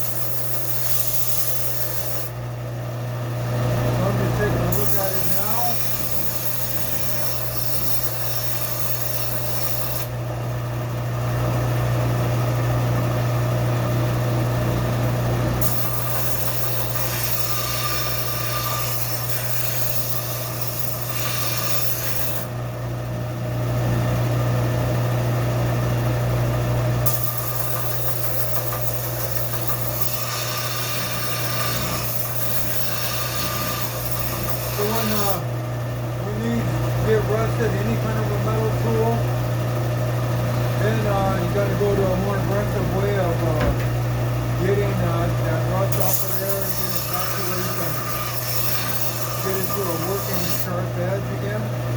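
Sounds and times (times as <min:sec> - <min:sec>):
blade scraping on sandpaper: 0:00.0 - 0:02.3, 0:04.7 - 0:10.1, 0:15.6 - 0:22.5, 0:27.1 - 0:35.4, 0:45.8 - 0:50.8
sander motor hum: 0:03.2 - 0:51.9.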